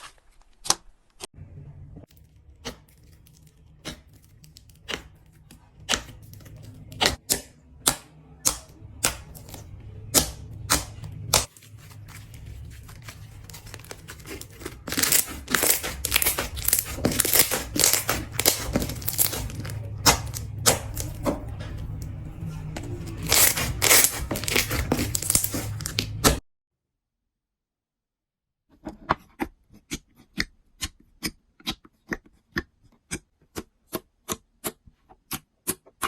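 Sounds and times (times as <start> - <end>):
slime popping and crackling: 2.6 - 21.3, 23.1 - 26.4.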